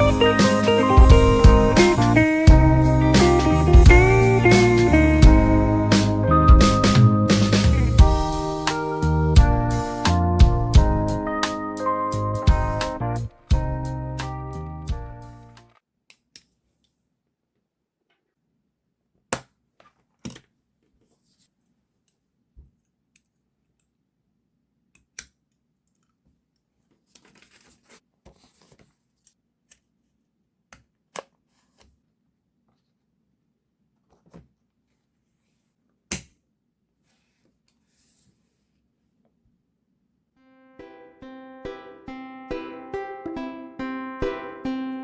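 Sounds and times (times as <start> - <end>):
paper rustling: 26.8 - 29.4.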